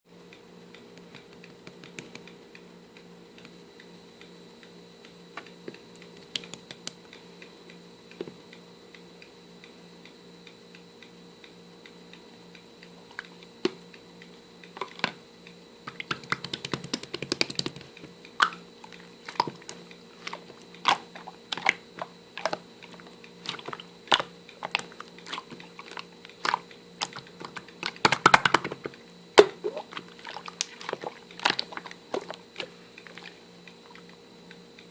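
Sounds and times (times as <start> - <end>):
steady low hum: 0.1 - 34.9.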